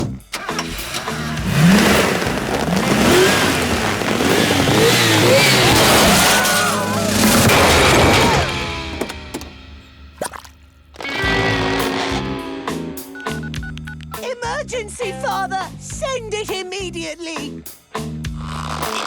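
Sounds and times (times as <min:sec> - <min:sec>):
rushing vehicle-like noise: 0:00.0 - 0:09.9
cartoon squeals and cries: 0:05.2 - 0:08.6.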